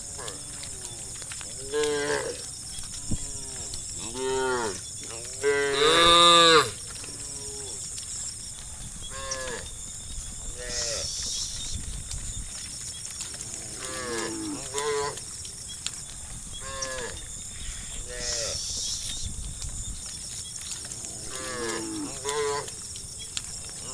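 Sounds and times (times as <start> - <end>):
cows mooing: 0.0 - 2.4, 3.0 - 7.8, 9.1 - 9.8, 10.4 - 11.1, 13.4 - 15.3, 16.6 - 18.6.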